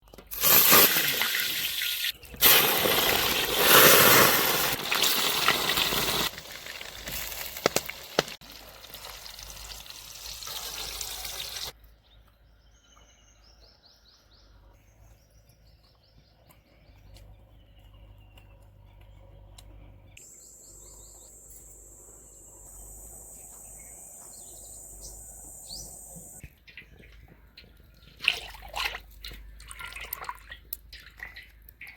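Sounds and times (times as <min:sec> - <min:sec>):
water pouring and splashing: 0:00.3 - 0:11.8, 0:28.0 - 0:31.9
birds chirping: 0:11.2 - 0:28.2
high-pitched hiss: 0:20.2 - 0:26.4.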